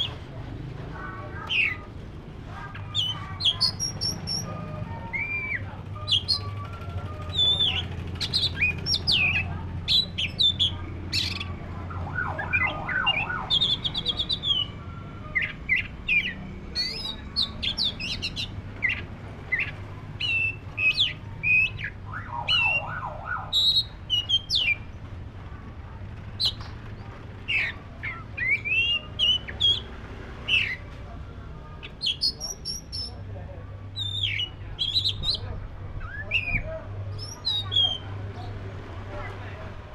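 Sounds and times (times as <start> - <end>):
bird singing whistled notes: 2.9 - 11.5
bird rapid chattering: 5.2 - 11.6, 31.8 - 33.2.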